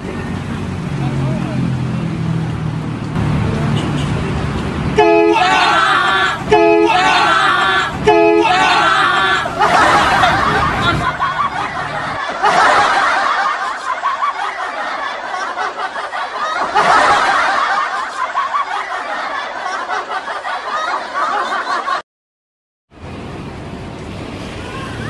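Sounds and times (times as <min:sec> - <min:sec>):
people laughing and snickering: 0:05.3 - 0:22.0.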